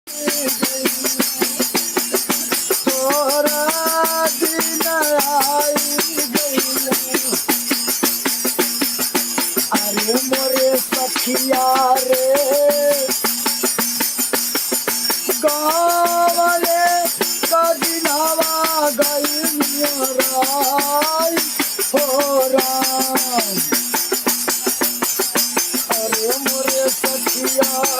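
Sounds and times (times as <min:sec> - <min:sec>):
man singing: 0:00.1 - 0:01.8, 0:02.6 - 0:07.6, 0:09.7 - 0:13.2, 0:15.3 - 0:23.8, 0:25.8 - 0:27.9
jingling hand percussion: 0:00.1 - 0:27.9.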